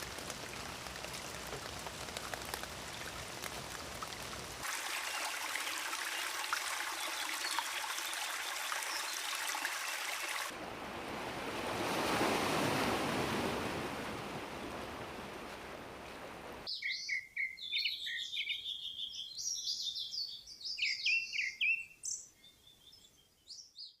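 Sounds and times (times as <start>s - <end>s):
crackling rain or trickling water: 0.0s - 10.6s
running water: 0.0s - 16.7s
songbirds chirping and trilling: 16.7s - 24.0s.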